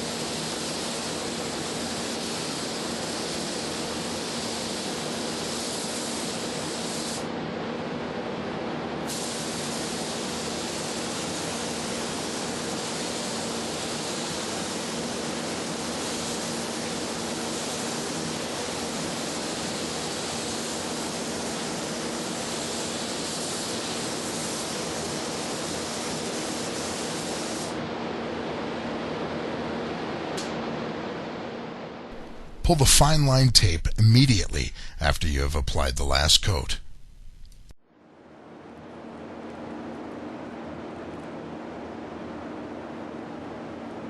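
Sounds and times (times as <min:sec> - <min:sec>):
spray gun hissing: 0:00.0 - 0:07.2, 0:09.1 - 0:27.8
low hum: 0:32.2 - 0:37.8.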